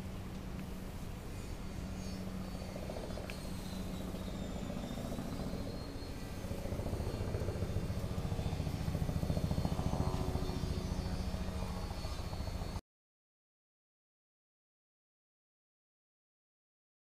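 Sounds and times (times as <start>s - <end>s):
motor running with flutter: 0.0s - 12.8s.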